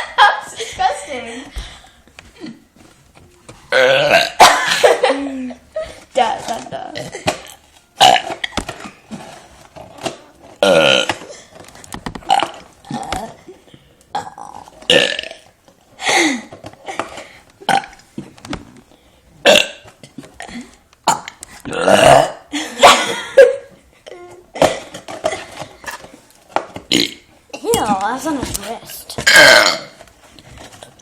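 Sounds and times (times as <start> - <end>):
person burping: 3.7 - 5.0, 8.0 - 8.6, 10.6 - 11.3, 12.3 - 13.5, 14.1 - 15.5, 17.6 - 18.0, 19.4 - 22.6, 26.9 - 27.3, 29.2 - 30.0.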